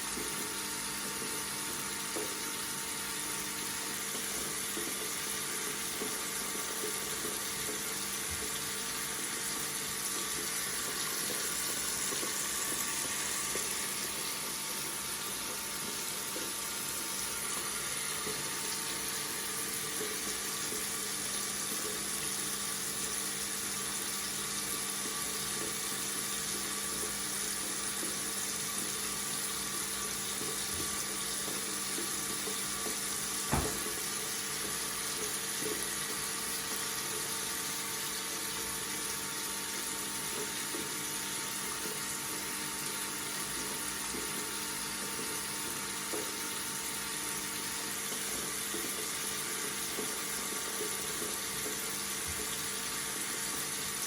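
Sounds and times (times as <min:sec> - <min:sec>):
tap water running into sink: 0:00.0 - 0:54.0
brief knock: 0:33.5 - 0:33.9.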